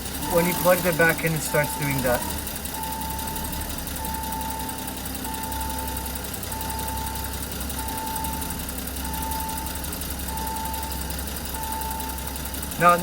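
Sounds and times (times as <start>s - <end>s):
car engine idling: 0.0s - 13.0s
electronic beeps: 0.2s - 11.0s.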